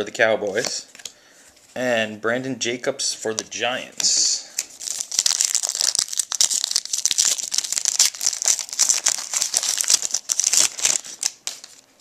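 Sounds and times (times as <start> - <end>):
foil wrapper crinkling and tearing: 4.6 - 11.8.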